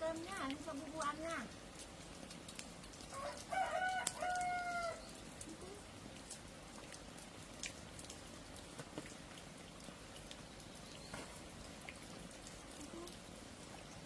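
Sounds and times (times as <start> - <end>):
rain dripping: 0.0 - 14.0
rooster crowing: 3.1 - 5.0.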